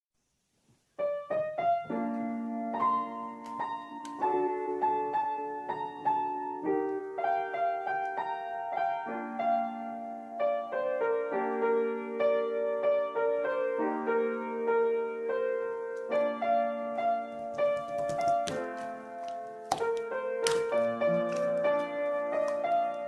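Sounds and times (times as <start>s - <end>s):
gentle piano music: 0.9s - 23.0s.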